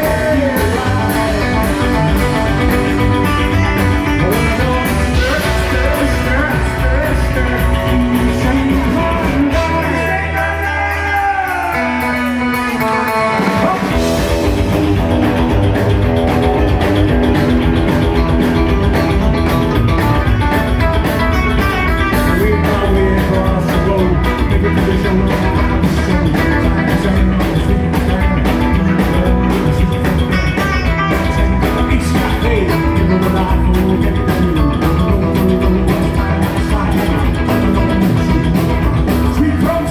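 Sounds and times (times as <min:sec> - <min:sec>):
guitar bending notes: 0:00.0 - 0:39.9
rockabilly band playing live: 0:00.0 - 0:39.9.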